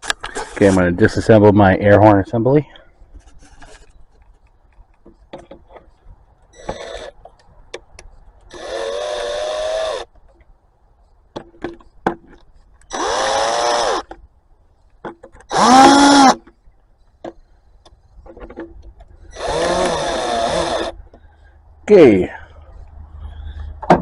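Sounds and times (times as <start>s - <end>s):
power drill whining: 6.5s - 7.1s, 8.5s - 10.1s, 12.9s - 14.1s, 15.5s - 16.4s, 19.3s - 21.0s.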